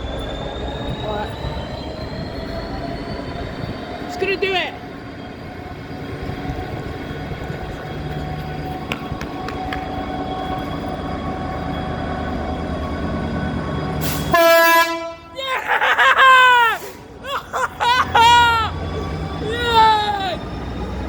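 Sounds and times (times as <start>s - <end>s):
diesel locomotive engine running: 0.0s - 21.0s
locomotive horn: 14.0s - 15.4s.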